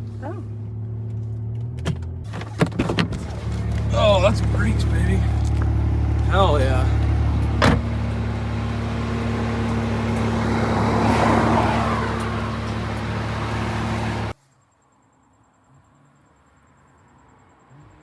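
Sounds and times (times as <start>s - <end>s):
car engine running: 0.0s - 14.4s
tyre and road noise: 0.0s - 14.4s.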